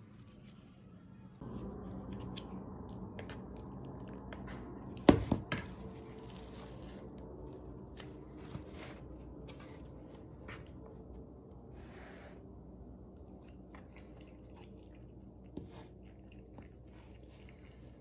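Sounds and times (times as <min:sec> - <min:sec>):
steady low hum: 0:00.0 - 0:18.0
wet eating noises: 0:01.4 - 0:08.5, 0:13.0 - 0:18.0.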